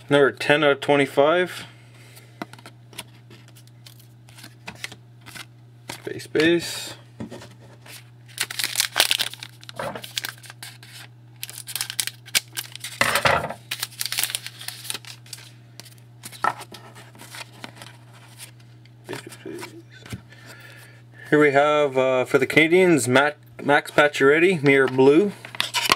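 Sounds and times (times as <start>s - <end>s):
low electrical hum: 0.0s - 25.9s
cards rustling and clicking: 2.4s - 6.6s, 7.4s - 20.2s
foil wrappers tearing and crinkling: 3.0s - 6.1s, 7.8s - 18.6s.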